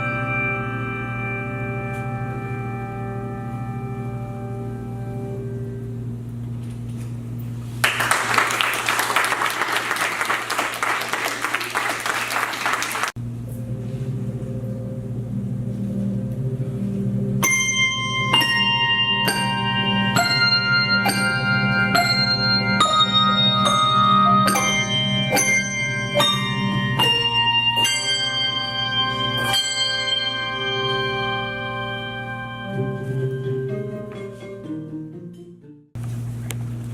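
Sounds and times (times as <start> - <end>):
audience applause: 7.8 - 13.2
handbells ringing: 17.4 - 33.0.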